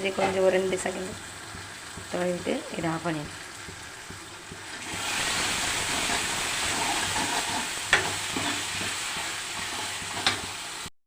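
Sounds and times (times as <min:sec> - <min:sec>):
spices sizzling in oil: 0:00.0 - 0:10.9
spoon tapping pan: 0:07.9 - 0:10.5.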